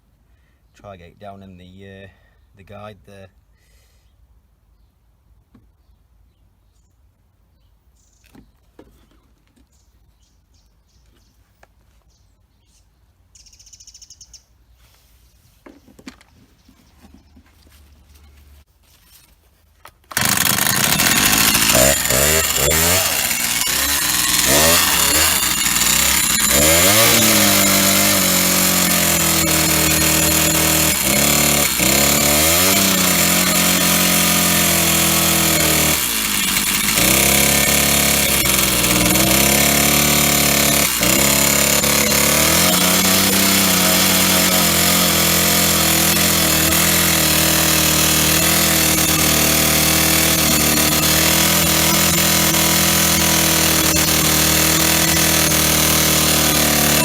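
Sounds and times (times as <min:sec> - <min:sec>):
chainsaw engine running: 0:20.1 - 0:57.0.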